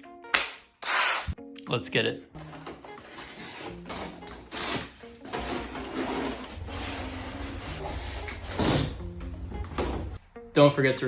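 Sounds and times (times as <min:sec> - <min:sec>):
rubbing and scraping handling noises: 0:02.4 - 0:10.2
background music with bass line: 0:02.4 - 0:10.6.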